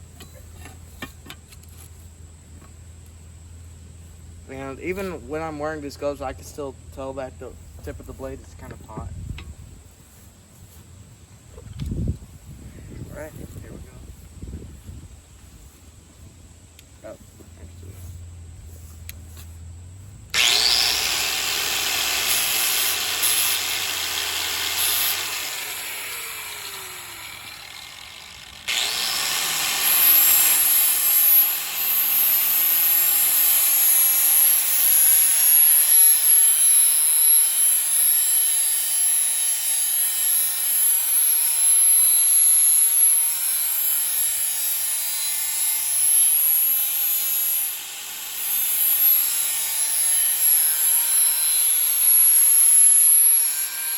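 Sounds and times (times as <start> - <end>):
electric sander grinding blade: 18.7 - 53.9.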